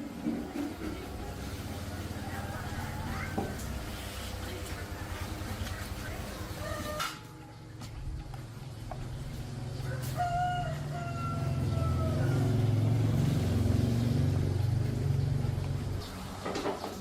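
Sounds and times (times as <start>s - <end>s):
low machine hum: 0.0s - 17.0s
rooster crowing: 9.7s - 13.3s.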